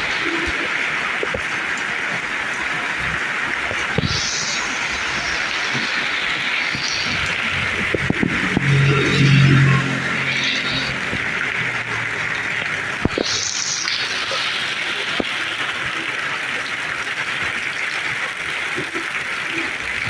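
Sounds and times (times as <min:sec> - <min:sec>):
heavy rain pouring: 0:00.0 - 0:20.0.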